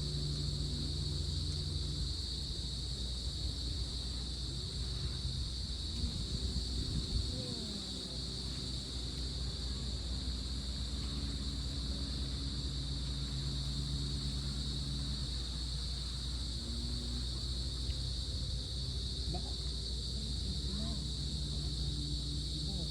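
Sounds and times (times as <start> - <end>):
crickets chirring: 0.0 - 22.9
faint low engine hum: 0.0 - 22.9
wind rumble: 5.2 - 8.3.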